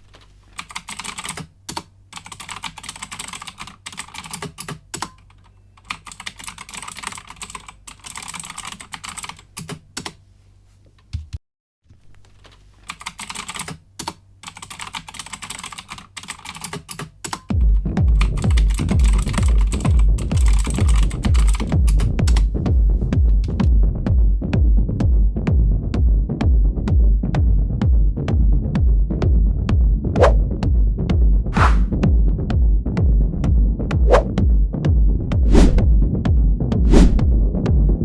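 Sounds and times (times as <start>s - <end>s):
keyboard typing: 0.0s - 10.2s, 12.3s - 17.5s, 18.2s - 22.4s.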